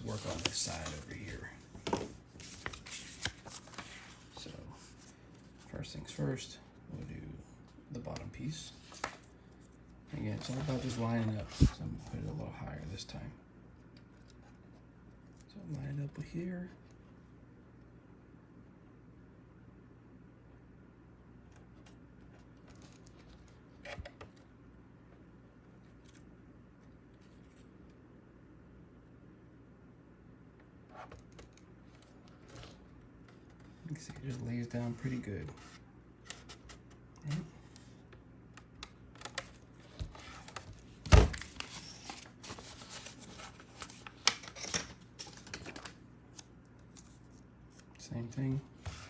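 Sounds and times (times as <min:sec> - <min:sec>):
vinyl decal rustling and rubbing: 0:00.0 - 0:05.8, 0:08.7 - 0:12.4, 0:31.9 - 0:36.9, 0:39.4 - 0:45.5, 0:47.0 - 0:49.0.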